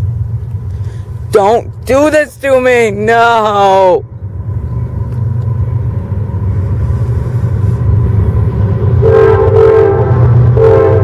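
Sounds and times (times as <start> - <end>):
freight train rumbling: 0.0 - 11.0
locomotive horn chord: 4.7 - 11.0.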